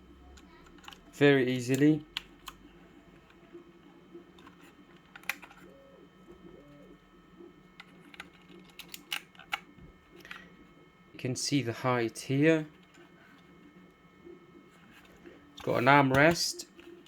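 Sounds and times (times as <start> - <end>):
keypad clicks: 4.4 - 5.7, 7.8 - 10.5.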